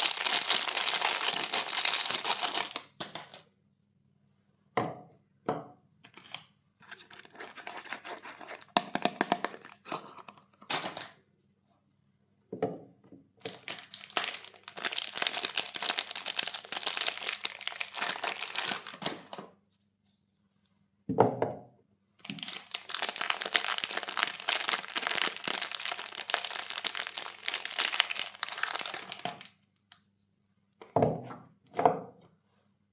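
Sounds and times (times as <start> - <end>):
wrapping crinkling and tearing: 0.0 - 3.4, 6.1 - 11.2, 13.4 - 19.3, 22.2 - 29.5.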